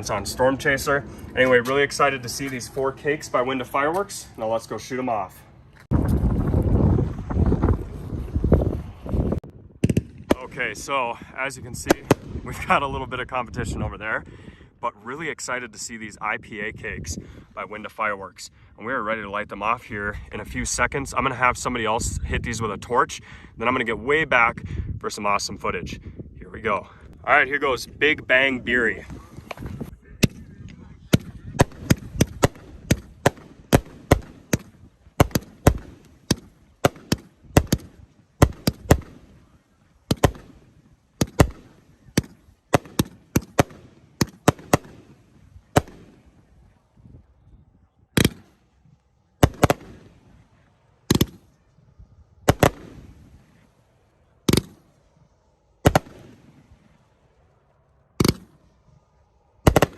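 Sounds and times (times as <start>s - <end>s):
firework launch pops: 9.8s - 10.5s
firework bangs: 11.8s - 12.5s, 31.1s - 46.5s, 49.4s - 50.4s, 52.4s - 53.6s, 55.8s - 57.0s, 59.6s - 59.9s
firework crackling: 31.1s - 39.4s, 59.6s - 59.9s.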